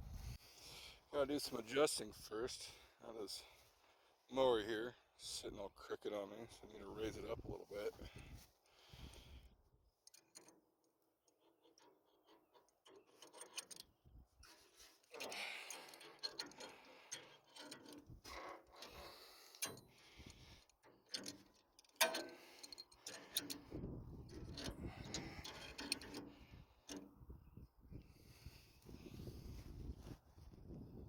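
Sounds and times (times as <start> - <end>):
clicks and knocks of mower hitch: 11.3 - 27.2.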